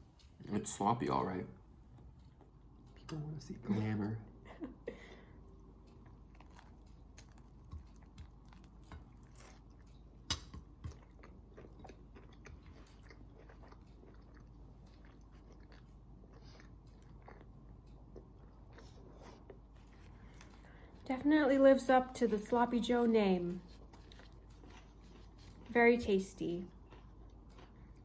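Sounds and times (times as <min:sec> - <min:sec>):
person chewing: 0:05.5 - 0:21.0, 0:23.6 - 0:25.8, 0:26.7 - 0:28.0.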